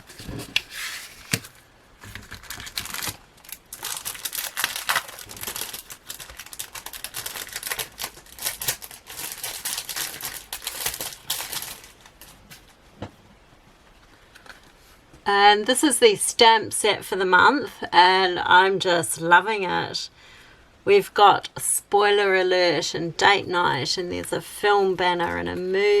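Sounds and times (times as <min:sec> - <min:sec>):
plastic packaging crinkling: 0:00.0 - 0:12.8.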